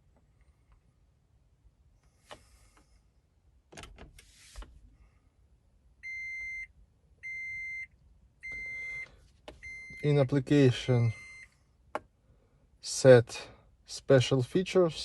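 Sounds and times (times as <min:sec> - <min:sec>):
electronic warning beep: 0:06.0 - 0:11.5.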